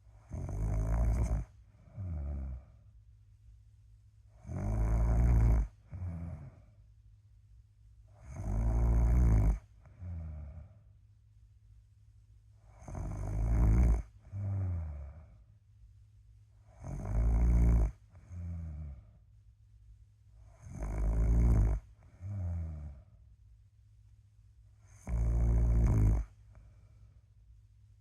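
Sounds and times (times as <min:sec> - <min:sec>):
person snoring: 0:00.2 - 0:02.7, 0:04.4 - 0:06.7, 0:08.2 - 0:10.7, 0:12.7 - 0:15.3, 0:16.7 - 0:19.1, 0:20.5 - 0:23.0, 0:24.8 - 0:26.3.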